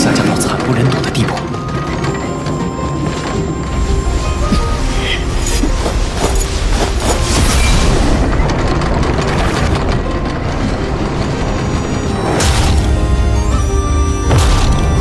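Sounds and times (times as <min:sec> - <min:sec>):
background music: 0:00.0 - 0:15.0
deep booming blast effect: 0:14.2 - 0:15.0.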